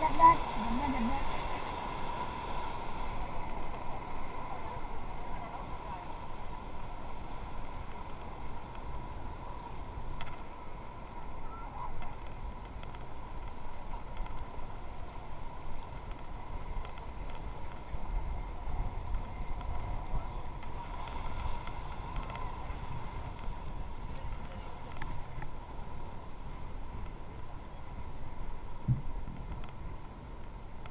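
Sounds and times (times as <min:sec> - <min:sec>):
river water rushing: 0:00.0 - 0:16.6
wind buffeting microphone: 0:00.0 - 0:30.9.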